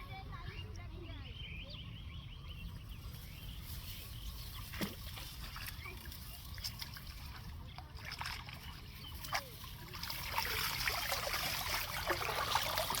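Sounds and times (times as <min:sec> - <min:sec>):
water trickling and splashing: 0:03.7 - 0:13.0.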